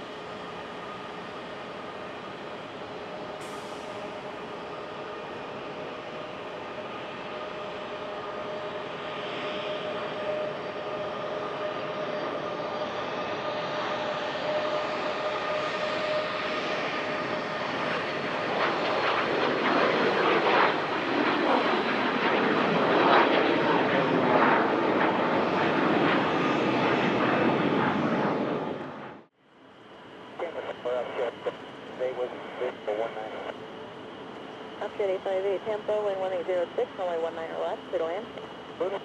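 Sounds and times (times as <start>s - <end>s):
jet engines whining: 0.0s - 39.0s
jet roar passing: 13.4s - 29.3s.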